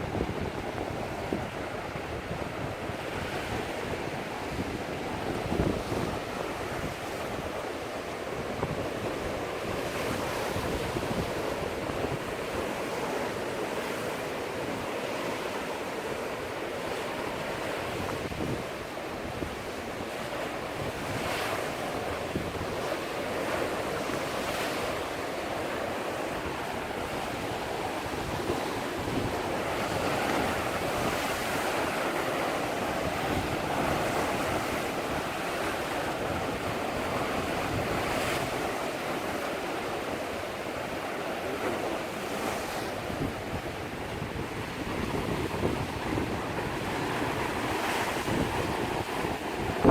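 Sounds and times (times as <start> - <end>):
wind buffeting microphone: 0.0 - 15.3, 17.3 - 49.9
sea waves breaking on rocks: 0.0 - 49.9.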